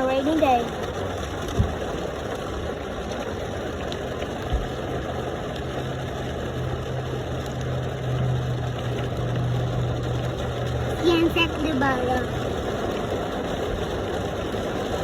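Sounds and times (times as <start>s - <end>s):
train engine hum: 6.4s - 15.0s.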